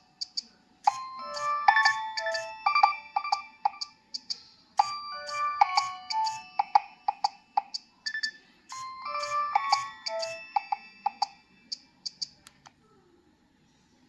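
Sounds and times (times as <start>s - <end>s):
polyphonic phone ringtone: 0.9s - 11.8s.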